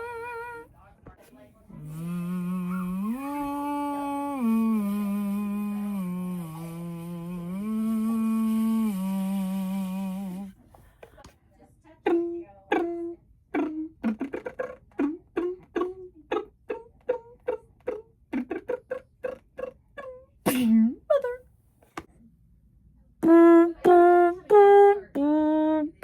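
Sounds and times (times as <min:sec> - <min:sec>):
person humming: 0:00.0 - 0:00.7, 0:01.7 - 0:10.6, 0:12.1 - 0:21.4, 0:23.2 - 0:26.0
mouth pops and clicks: 0:13.6 - 0:20.9.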